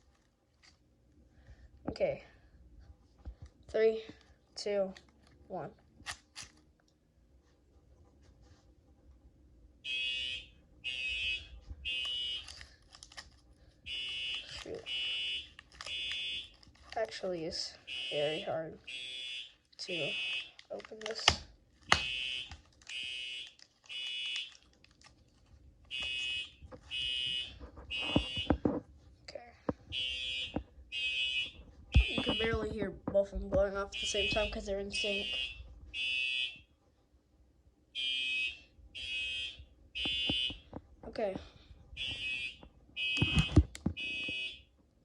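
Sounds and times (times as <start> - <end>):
fire alarm beeps: 9.8 - 12.5, 13.9 - 16.5, 17.9 - 20.5, 22.0 - 24.5, 25.9 - 28.6, 29.9 - 32.7, 33.9 - 36.6, 38.0 - 40.6, 42.0 - 44.7.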